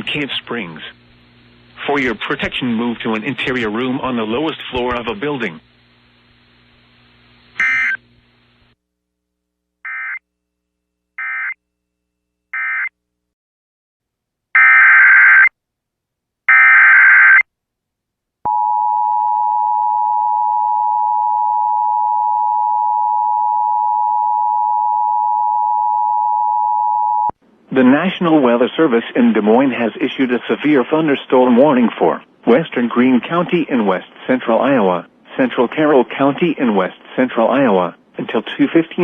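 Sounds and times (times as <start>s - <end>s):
data bursts: 7.6s - 8.0s.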